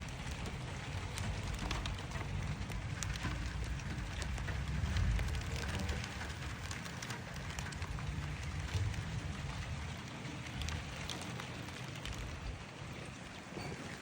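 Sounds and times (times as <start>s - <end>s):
low rumble: 0.0s - 11.2s
rain falling: 0.0s - 14.0s
raindrops ticking close by: 0.0s - 14.0s.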